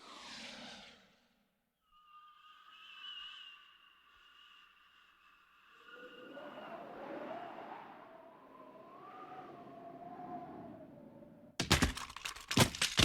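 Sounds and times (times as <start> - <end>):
wavering whistling whoosh: 1.9 - 11.5
loud crashing impacts: 11.6 - 13.0.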